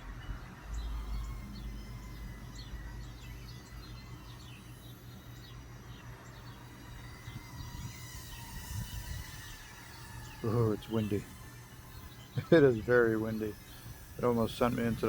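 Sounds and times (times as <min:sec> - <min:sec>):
small birds chirping: 0:00.0 - 0:15.0
wind rumbling on microphone: 0:07.0 - 0:15.0.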